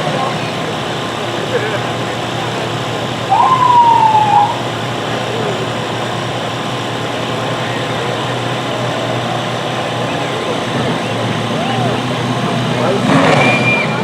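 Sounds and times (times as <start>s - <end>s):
police siren blip: 3.3s - 4.6s.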